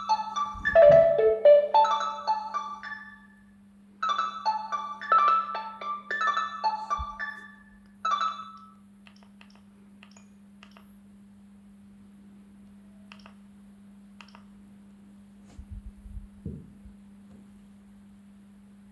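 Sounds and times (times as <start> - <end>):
steady low hum: 0.0 - 1.9, 9.6 - 18.9
cordless phone ringtone melody: 0.0 - 3.4, 4.0 - 8.8
low bumps: 0.6 - 1.4, 15.5 - 16.9.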